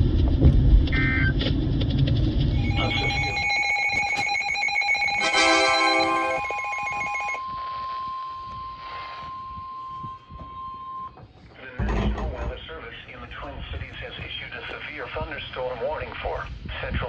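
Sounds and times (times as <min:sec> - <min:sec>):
steady alarm tone: 0:02.5 - 0:13.2
overlapping electronic beeping tones: 0:02.6 - 0:07.4
low noisy rumble: 0:11.6 - 0:17.0.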